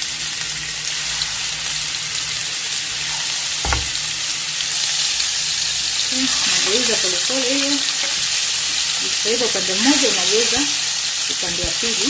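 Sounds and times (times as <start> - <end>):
kebabs sizzling in oil: 0.0 - 12.0
short knock: 3.6 - 4.0.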